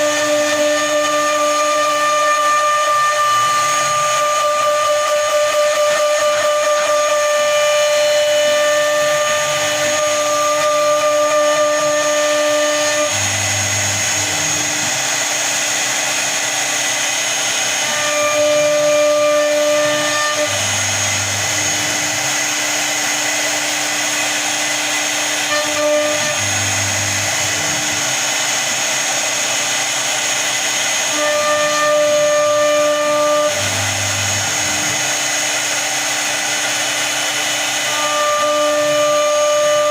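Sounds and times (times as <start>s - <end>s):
low motor tones: 0.0s - 28.9s
router spindle whine and cutting: 0.0s - 39.9s.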